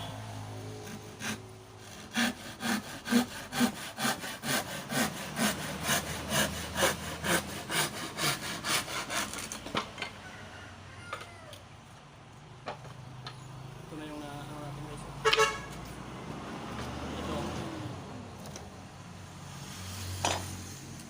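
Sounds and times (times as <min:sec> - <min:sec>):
hand saw cutting wood: 0:00.7 - 0:09.9.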